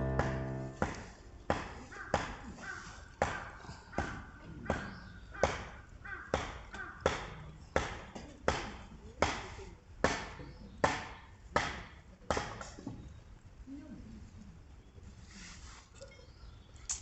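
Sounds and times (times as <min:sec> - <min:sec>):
chopping knocks: 0:00.1 - 0:01.7.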